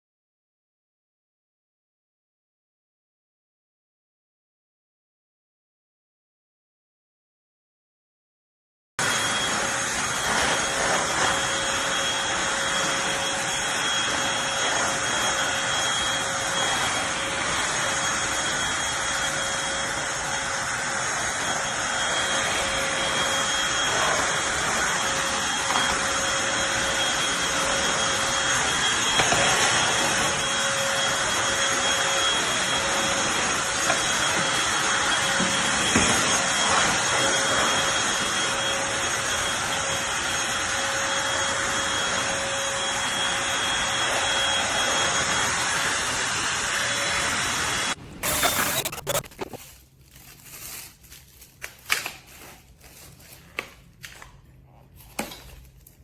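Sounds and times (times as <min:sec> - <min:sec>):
vacuum cleaner running: 0:09.0 - 0:49.7.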